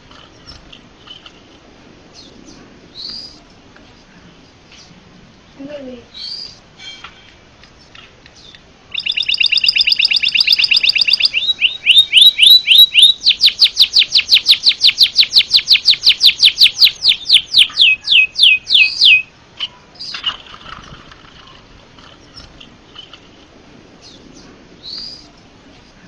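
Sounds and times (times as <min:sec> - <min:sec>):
songbird singing trills: 0:04.4 - 0:07.0, 0:07.8 - 0:20.4.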